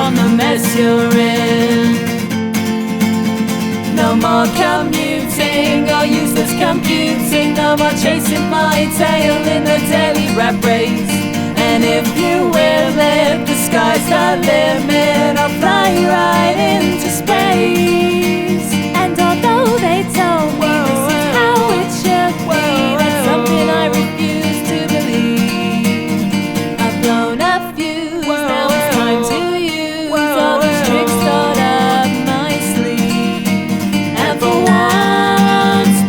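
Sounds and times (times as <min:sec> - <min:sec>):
acoustic guitar song: 0:00.0 - 0:36.0.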